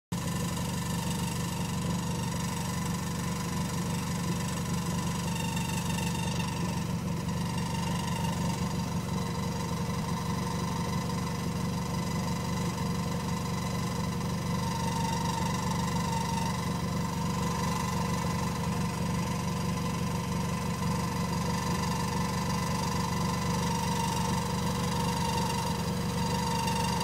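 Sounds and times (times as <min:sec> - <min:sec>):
car engine idling: 0:00.1 - 0:27.0
exhaust ticking and vibrating: 0:00.1 - 0:27.0.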